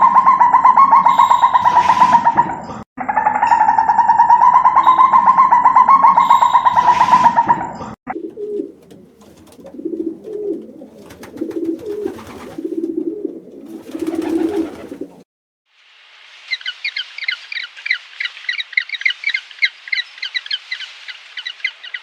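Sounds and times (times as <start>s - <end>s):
loud wavering call: 0.0s - 2.5s, 3.2s - 7.6s
pigeons cooing: 4.0s - 15.2s.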